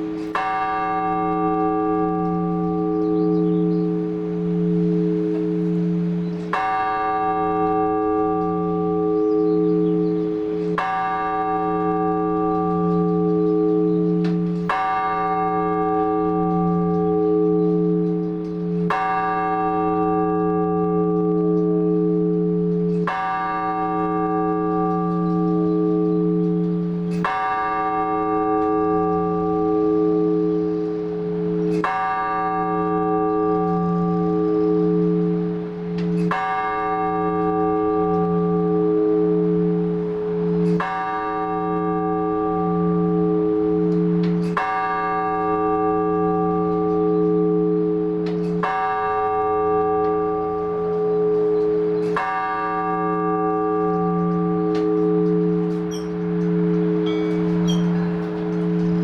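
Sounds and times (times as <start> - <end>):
large church bell tolling: 0.0 - 59.0.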